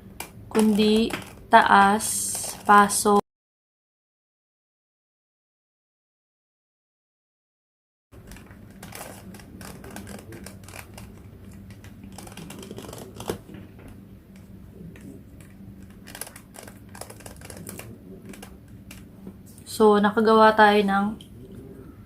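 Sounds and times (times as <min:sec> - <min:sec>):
puzzle cube plastic clicks: 0:00.2 - 0:01.5, 0:15.4 - 0:19.1
steady low hum: 0:08.2 - 0:22.0.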